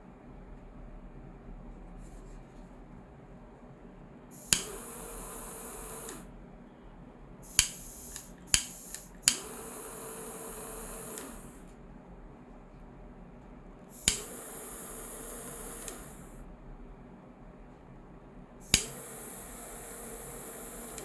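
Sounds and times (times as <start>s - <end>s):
jet flame hissing: 4.3s - 6.3s, 7.4s - 11.6s, 13.9s - 16.4s, 18.6s - 21.0s
lighter clicking: 4.4s - 5.2s, 7.5s - 9.5s, 14.0s - 14.7s, 18.6s - 19.0s.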